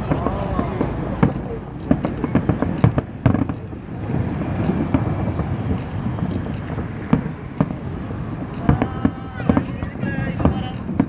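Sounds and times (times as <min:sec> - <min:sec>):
low din with pops: 0:00.0 - 0:07.8
fireworks bangs and crackles: 0:00.0 - 0:11.0.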